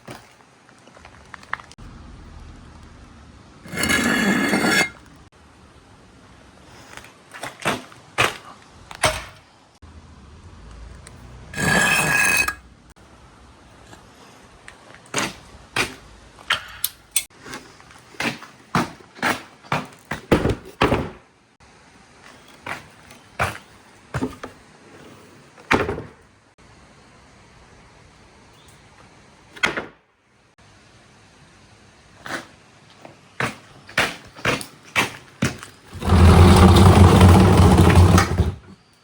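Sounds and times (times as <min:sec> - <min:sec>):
marbles rolling rumble: 0:35.9 - 0:38.6.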